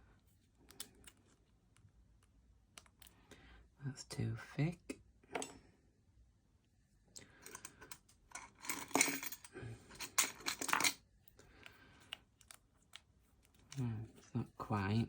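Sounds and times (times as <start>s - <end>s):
metal lock-picking tools clinking: 7.4s - 11.0s.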